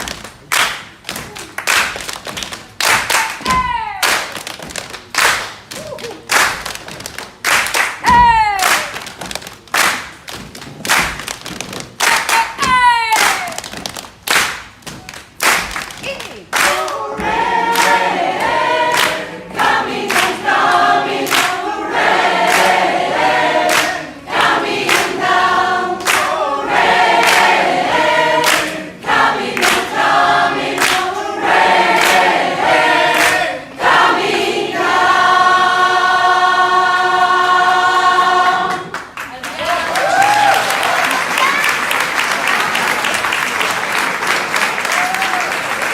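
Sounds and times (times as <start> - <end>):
percussive hits: 7.9 - 34.1
choir singing in harmony: 16.7 - 39.0.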